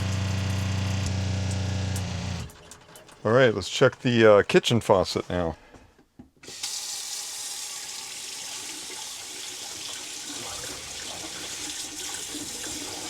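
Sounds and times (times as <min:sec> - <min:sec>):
air purging from water lines: 0:00.0 - 0:02.6
faucet water streaming into sink: 0:06.4 - 0:13.0.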